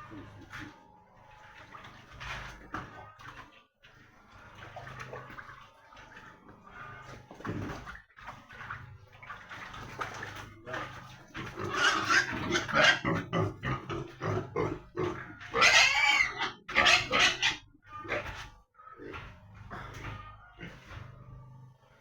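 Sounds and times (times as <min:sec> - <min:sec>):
pigs grunting and squealing: 0:09.8 - 0:21.9.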